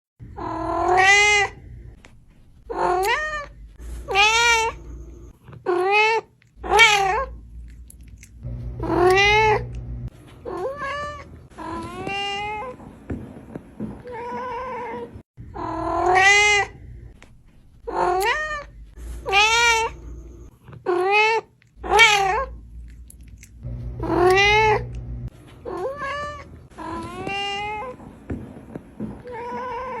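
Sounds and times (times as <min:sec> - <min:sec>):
cat yowling: 0:00.4 - 0:01.6, 0:02.7 - 0:04.8, 0:05.7 - 0:07.3, 0:08.8 - 0:09.7, 0:14.0 - 0:16.8, 0:20.9 - 0:22.6, 0:24.0 - 0:25.0.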